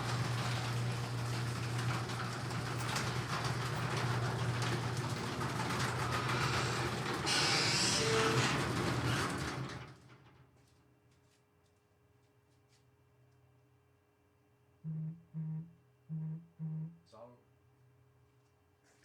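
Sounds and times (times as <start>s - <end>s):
machine humming and rattling: 0.0s - 10.0s.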